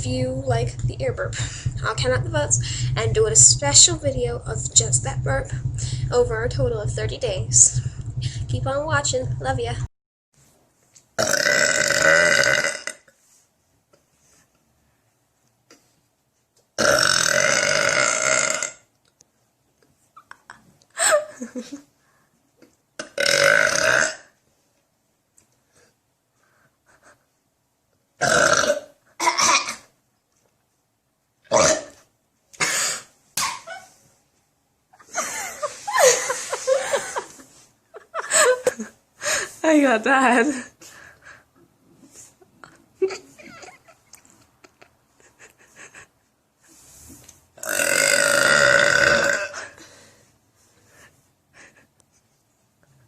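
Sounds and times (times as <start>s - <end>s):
girl burping loudly: 11.2s - 13.1s, 16.8s - 18.8s, 23.0s - 24.3s, 28.2s - 29.9s, 31.5s - 32.0s, 47.6s - 49.8s.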